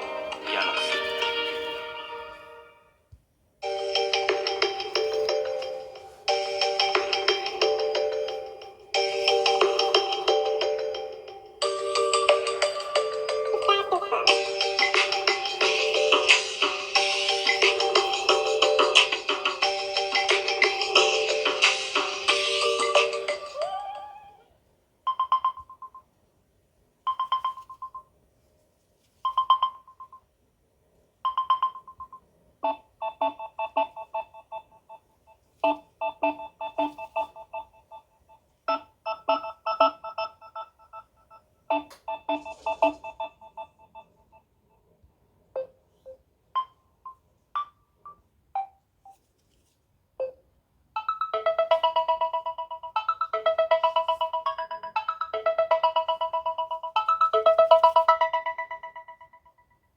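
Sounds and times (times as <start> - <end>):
phone ringtones: 3.6 - 24.4, 31.3 - 44.4, 51.0 - 59.5.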